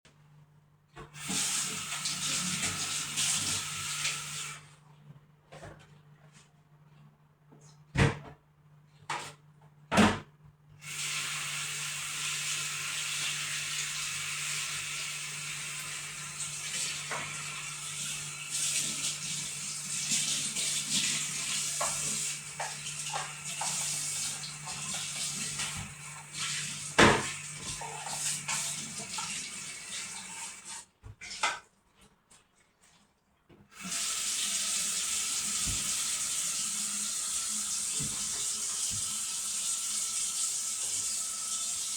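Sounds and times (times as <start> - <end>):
tap water running into sink: 1.2 - 4.6, 10.8 - 31.6, 33.8 - 41.9.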